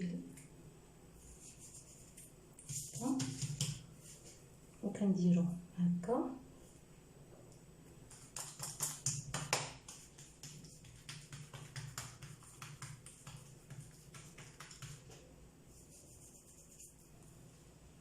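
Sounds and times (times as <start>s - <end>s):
hands patting dough: 2.6s - 4.2s, 8.1s - 15.3s.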